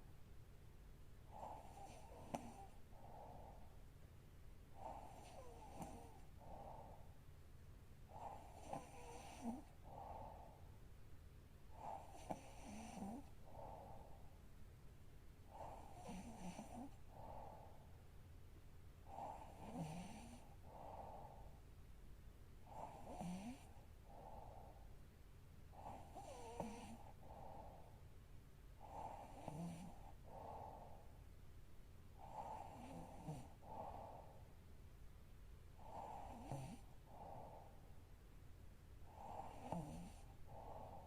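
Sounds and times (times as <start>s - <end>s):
woman snoring faintly: 1.4s - 2.8s, 4.8s - 7.0s, 8.1s - 9.7s, 11.8s - 14.1s, 15.5s - 17.6s, 19.1s - 21.5s, 22.7s - 24.5s, 25.8s - 27.4s, 28.8s - 31.0s, 32.2s - 34.2s, 35.8s - 37.7s, 39.1s - 41.0s.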